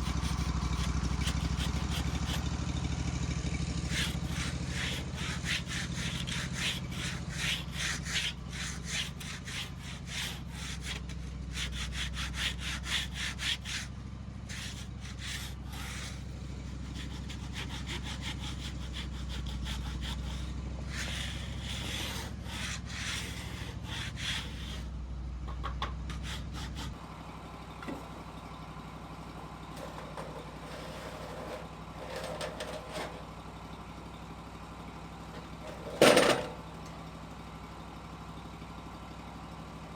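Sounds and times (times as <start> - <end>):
saw blade cutting log: 0.0 - 2.6, 3.8 - 25.0, 26.1 - 27.0, 29.7 - 33.2, 35.4 - 36.9
sawmill engine humming: 0.0 - 39.9.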